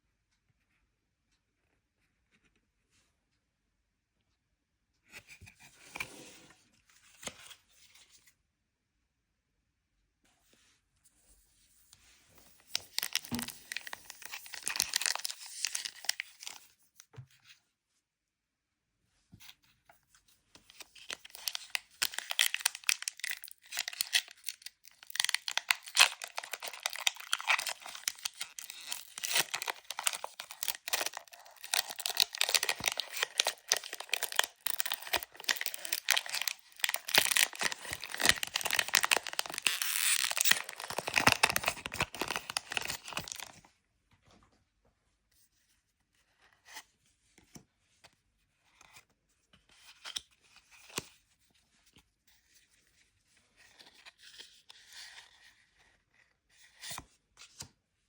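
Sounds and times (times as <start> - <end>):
plastic packaging crinkling and tearing: 12.6 - 16.7, 20.6 - 43.7.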